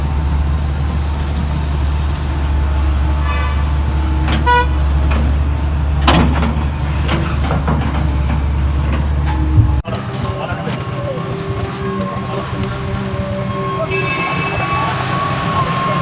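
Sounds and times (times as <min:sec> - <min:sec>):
diesel excavator engine droning: 0:00.0 - 0:16.0
horn toots: 0:02.7 - 0:05.2, 0:11.2 - 0:16.0.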